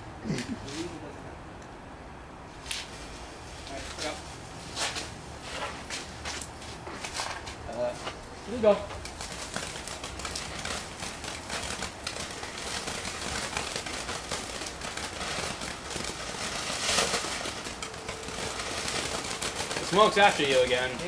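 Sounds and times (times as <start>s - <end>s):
firework crackling: 8.2s - 21.0s.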